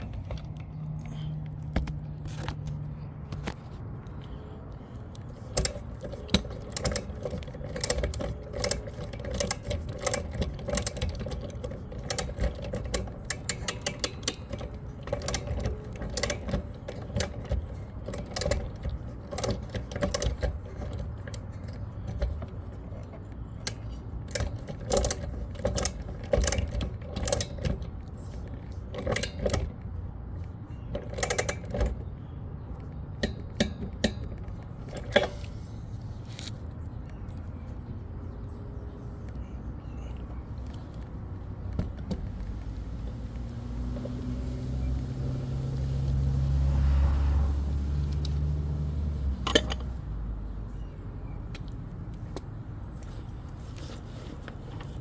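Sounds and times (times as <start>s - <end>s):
socket wrench clicking: 5.5s - 21.5s.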